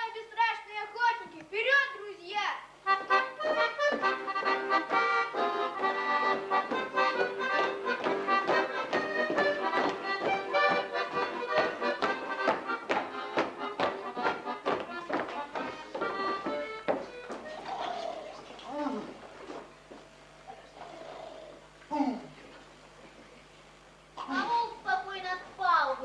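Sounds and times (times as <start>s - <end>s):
accordion playing folk tune: 2.8s - 21.2s.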